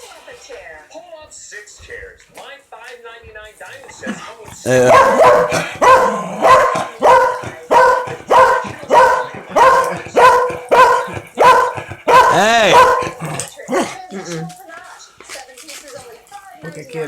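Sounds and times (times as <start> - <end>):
dog barking: 4.7 - 14.0
popping candy crackling: 13.1 - 17.0.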